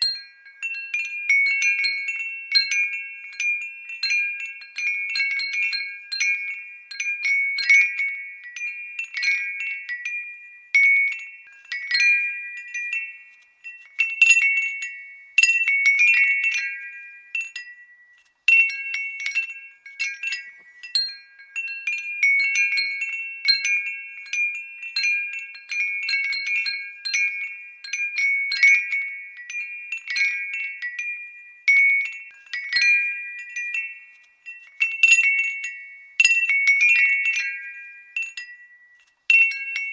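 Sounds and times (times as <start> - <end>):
glass windbell tinkling: 0.0 - 39.9.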